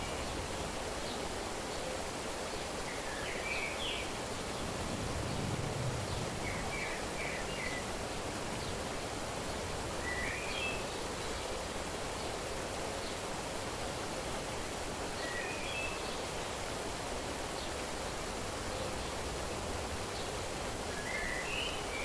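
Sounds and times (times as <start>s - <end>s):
outdoor ambient hiss: 0.0s - 22.0s
small birds chirping: 20.0s - 22.0s.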